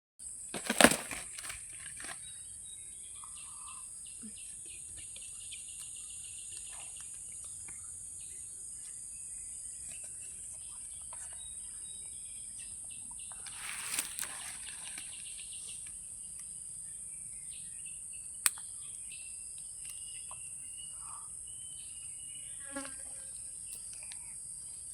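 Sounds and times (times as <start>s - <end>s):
rustle: 0.4s - 2.4s, 13.3s - 16.4s
bird chirps: 2.0s - 22.9s.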